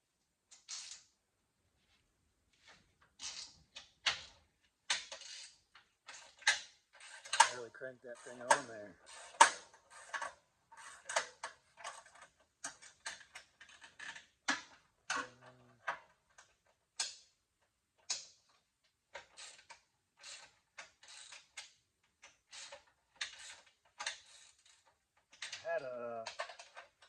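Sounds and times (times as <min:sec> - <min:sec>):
socket ratchet clicking: 0:19.2 - 0:21.7.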